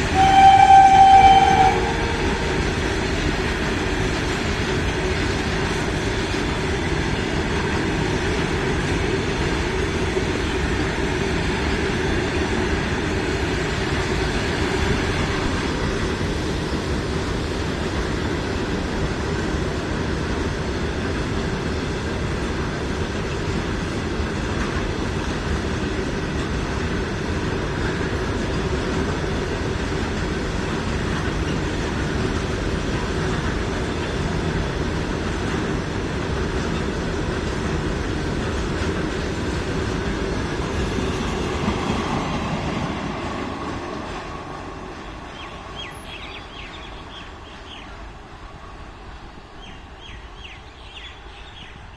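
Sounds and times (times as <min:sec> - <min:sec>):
train wheels rumbling on track: 0:00.0 - 0:51.9
bird chirps: 0:45.3 - 0:48.0, 0:49.6 - 0:51.9.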